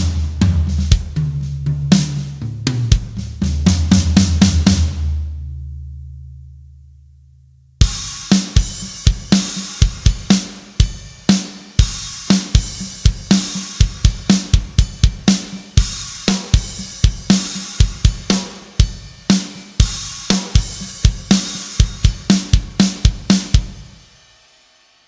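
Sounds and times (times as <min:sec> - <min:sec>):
drum kit groove: 0:00.0 - 0:05.5, 0:07.8 - 0:24.8
low bass tone: 0:04.8 - 0:07.8.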